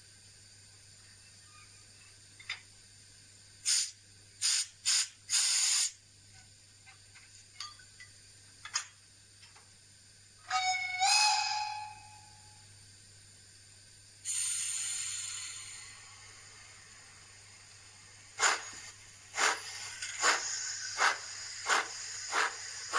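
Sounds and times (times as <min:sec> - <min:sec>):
hissing steam bursts: 0:03.6 - 0:06.0, 0:14.2 - 0:17.0, 0:18.4 - 0:22.9
train whistle blast: 0:10.4 - 0:12.6.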